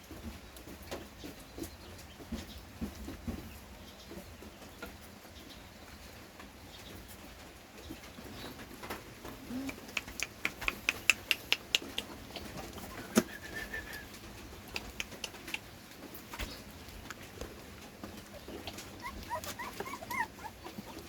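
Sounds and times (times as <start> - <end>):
puppy eating with clicks: 8.9 - 21.0.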